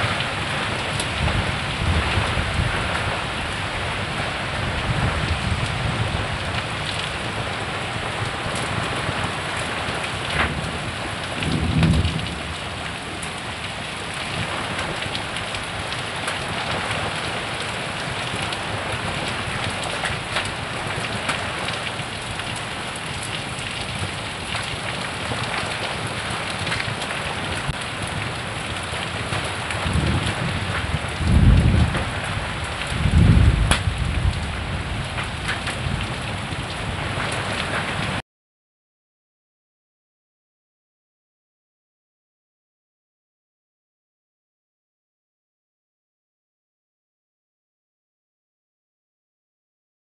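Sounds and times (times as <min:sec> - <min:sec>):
heavy rain: 0:00.0 - 0:38.2.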